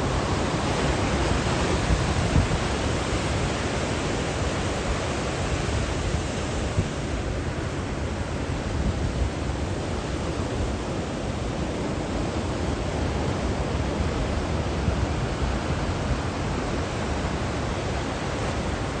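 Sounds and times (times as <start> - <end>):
ocean surf breaking: 0.0 - 8.5.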